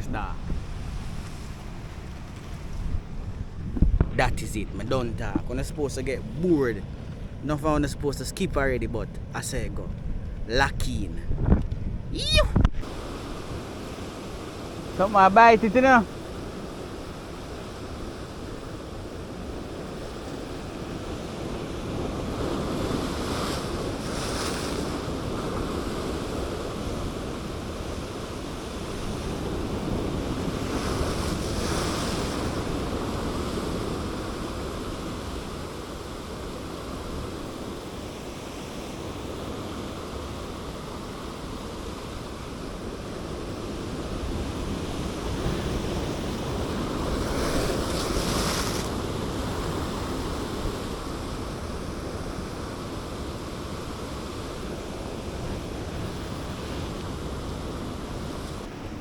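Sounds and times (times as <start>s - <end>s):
wind on microphone: 0.0s - 7.8s, 8.4s - 15.0s
waves washing against rocks: 42.4s - 59.0s.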